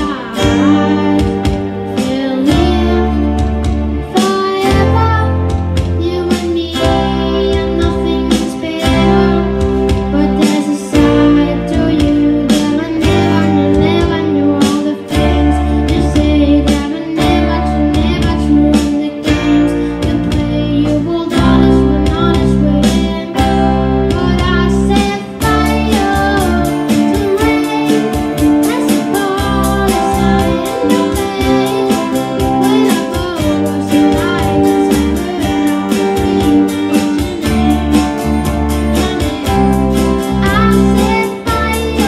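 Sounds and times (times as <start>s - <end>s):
pop band playing: 0.0s - 42.0s
children singing: 24.2s - 42.0s.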